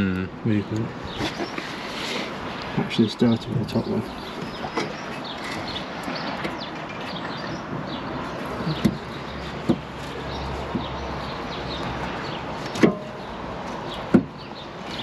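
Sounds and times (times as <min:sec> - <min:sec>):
birds chirping: 0:00.0 - 0:15.0
sharp knocks on metal: 0:08.8 - 0:09.9, 0:12.6 - 0:13.2, 0:14.1 - 0:14.4.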